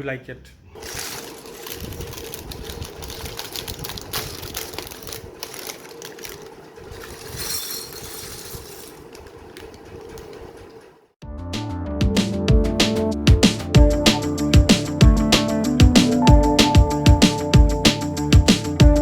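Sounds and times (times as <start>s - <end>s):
music with a beat: 11.2s - 19.0s.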